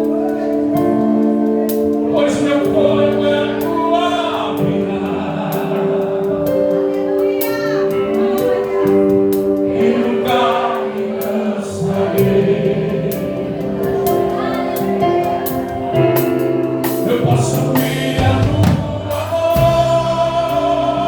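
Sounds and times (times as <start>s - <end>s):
gospel band playing: 0.0s - 21.0s
people singing: 0.0s - 21.0s
steady drum beat: 0.0s - 21.0s.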